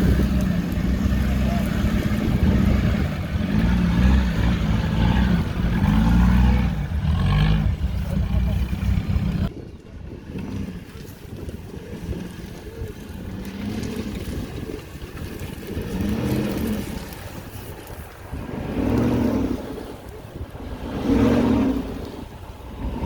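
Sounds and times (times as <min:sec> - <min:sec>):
suv engine revving: 0:00.0 - 0:09.5, 0:18.4 - 0:23.0.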